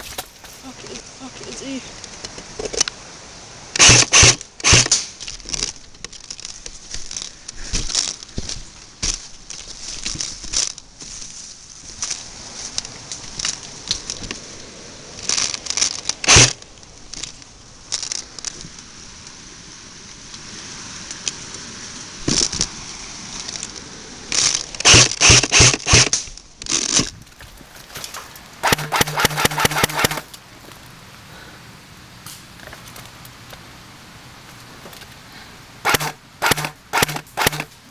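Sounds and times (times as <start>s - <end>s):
feet crunching dry leaves: 0.0s - 1.0s, 5.0s - 37.9s
sharp cracks: 3.7s - 6.6s, 15.2s - 18.6s, 24.3s - 30.4s, 35.8s - 37.9s
rapid rattling burst: 3.8s - 5.0s, 16.2s - 16.5s, 24.8s - 26.1s, 28.0s - 30.3s, 35.8s - 37.8s
low hum: 27.1s - 32.6s.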